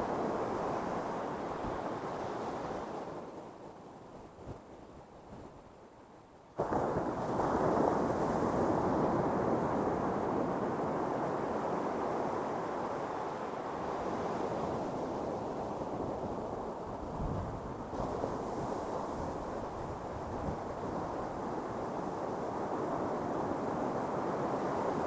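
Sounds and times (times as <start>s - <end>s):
ocean surf breaking on beach: 6.6s - 25.0s.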